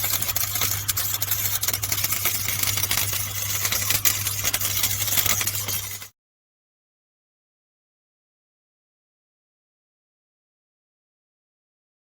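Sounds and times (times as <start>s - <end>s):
saw blade rattling through wood: 0.0s - 6.1s
scroll saw motor hum: 0.0s - 6.1s.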